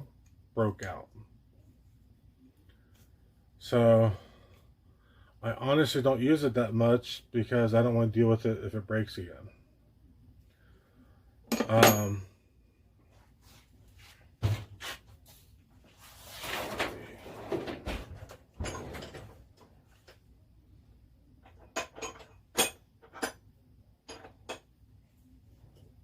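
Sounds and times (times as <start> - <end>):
tools sliding and rummaging: 13.4 - 20.1.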